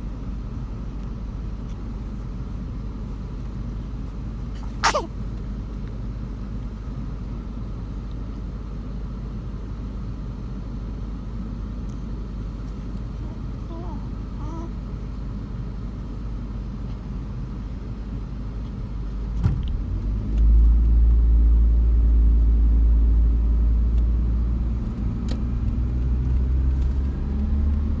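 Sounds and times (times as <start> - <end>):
road rumble: 0.0 - 28.0
car engine: 24.3 - 28.0.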